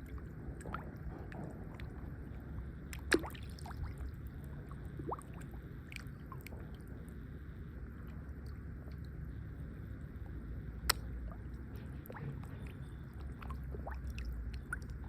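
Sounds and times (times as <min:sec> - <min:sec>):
water gurgling and lapping: 0:00.0 - 0:15.0
small pops and clicks: 0:10.9 - 0:11.2.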